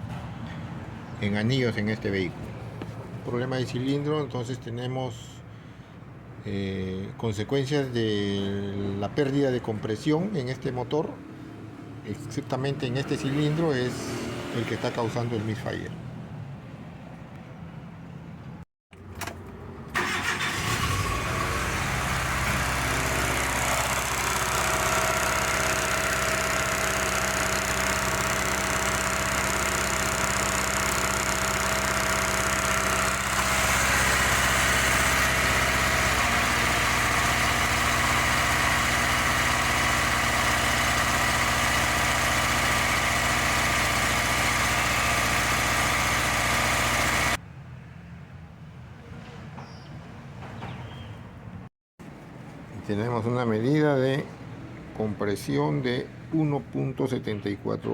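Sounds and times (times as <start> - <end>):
car engine idling: 20.0 - 47.4.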